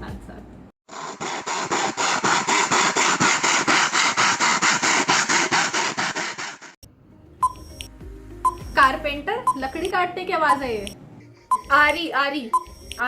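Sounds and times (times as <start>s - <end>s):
hand saw cutting wood: 0.9s - 6.8s.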